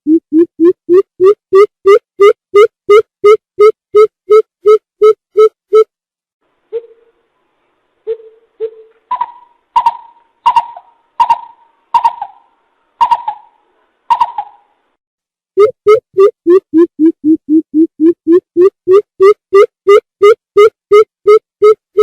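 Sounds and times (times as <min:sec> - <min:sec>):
bird deep hooting calls: 0:08.1 - 0:14.7.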